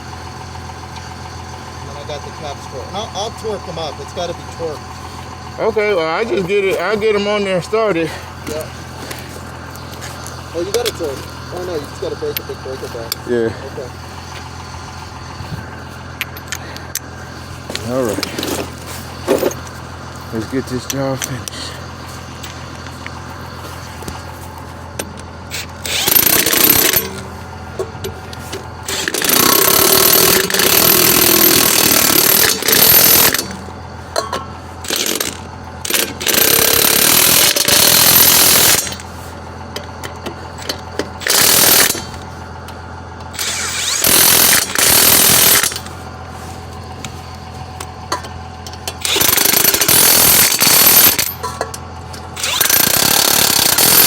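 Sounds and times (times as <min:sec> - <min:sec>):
steady low hum: 0:00.0 - 0:36.3, 0:37.5 - 0:52.6
impact wrench hammering: 0:17.7 - 0:19.7, 0:25.0 - 0:39.1, 0:40.0 - 0:42.2, 0:43.3 - 0:46.0, 0:48.1 - 0:51.8, 0:52.4 - 0:54.0.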